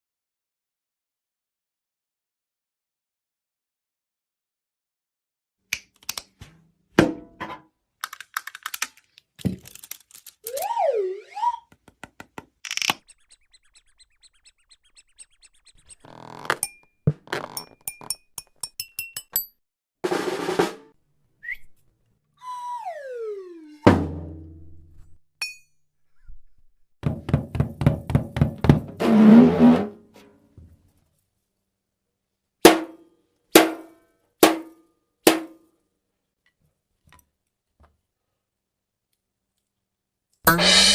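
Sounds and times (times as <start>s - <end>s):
falling whistle: 10.4s - 11.7s, 22.4s - 23.9s
swooping whistle: 10.4s - 11.7s, 21.4s - 21.7s, 22.4s - 23.8s
cartoon knocks and clicks: 11.7s - 13.3s
fast drum strikes: 20.0s - 20.9s, 27.0s - 29.0s.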